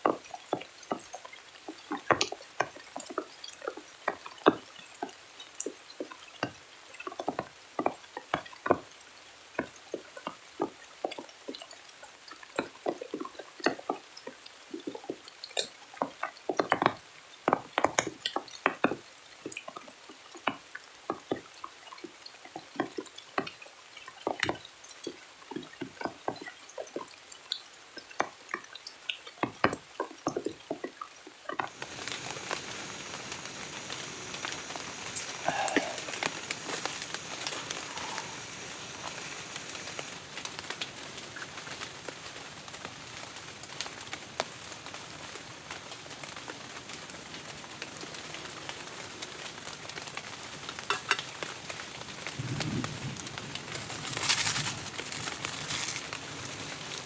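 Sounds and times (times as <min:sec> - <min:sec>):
water drips tapping: 0:00.0 - 0:32.6, 0:34.4 - 0:42.2, 0:49.4 - 0:51.4, 0:52.2 - 0:57.0
heavy rain hissing: 0:31.8 - 0:57.0.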